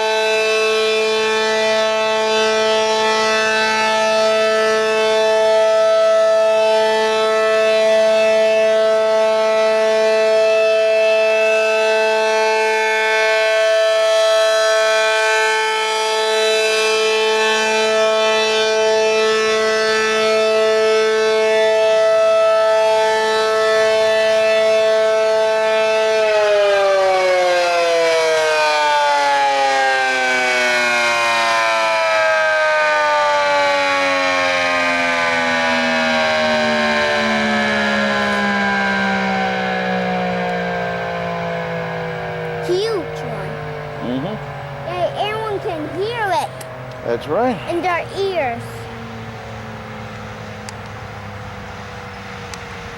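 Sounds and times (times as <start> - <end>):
warning siren steady tone: 0.0 - 52.9.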